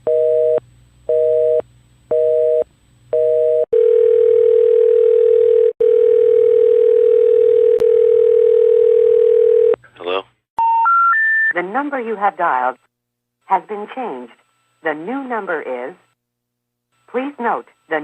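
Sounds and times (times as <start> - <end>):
telephone busy signal: 3.2 - 9.8
telephone dial tone: 3.2 - 9.8.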